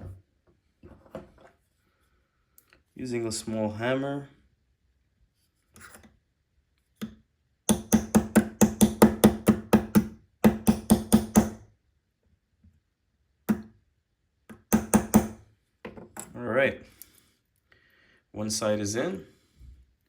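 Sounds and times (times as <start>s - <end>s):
small hammer tapping metal tool: 7.0s - 11.6s.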